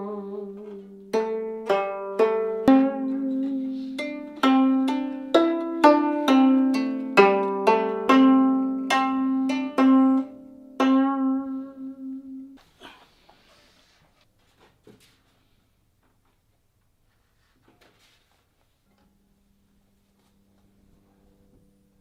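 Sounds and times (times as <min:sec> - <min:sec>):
plucked zither melody: 0:00.0 - 0:12.6.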